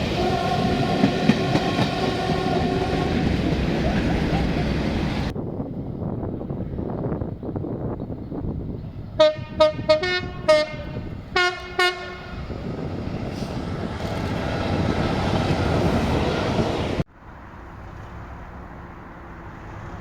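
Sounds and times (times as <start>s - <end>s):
train rumbling past: 0.0s - 20.0s
two-tone train horn toots: 0.1s - 3.4s, 9.2s - 12.4s.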